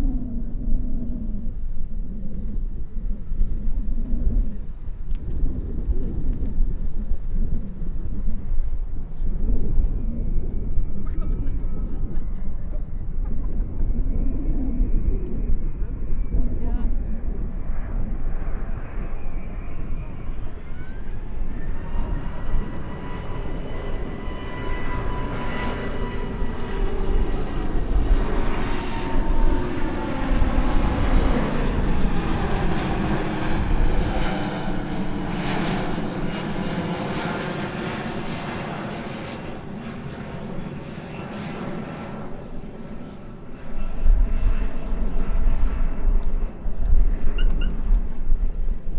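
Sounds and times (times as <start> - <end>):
jet engines passing by: 0.0 - 48.9
wind buffeting microphone: 0.0 - 48.9.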